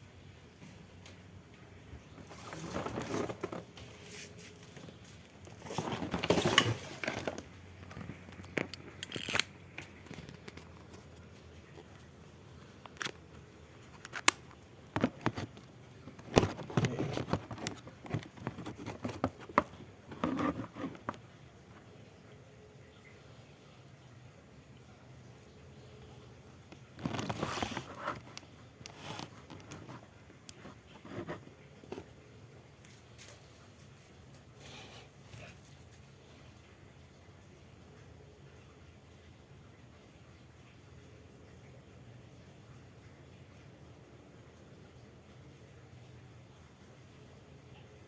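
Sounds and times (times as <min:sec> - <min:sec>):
rustling and crinkling: 0:00.5 - 0:22.0, 0:26.6 - 0:36.5.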